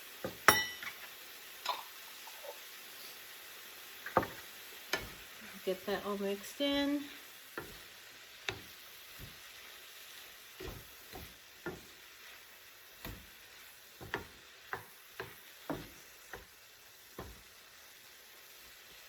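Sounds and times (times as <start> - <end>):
vegetables sizzling in a frying pan: 0.0 - 19.0
utensil scraping a pan: 10.6 - 16.5.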